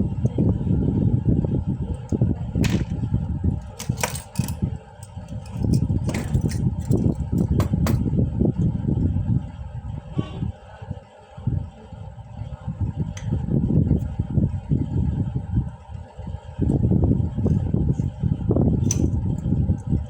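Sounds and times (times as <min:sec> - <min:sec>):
steady low rumble: 0:00.0 - 0:20.0
sharp clicks and knocks of tools: 0:03.6 - 0:08.0.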